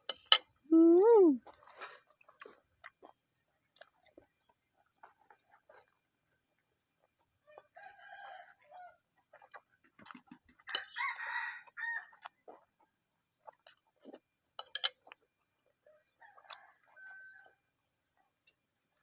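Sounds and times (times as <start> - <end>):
rooster crowing: 10.8 - 12.1, 16.2 - 17.6.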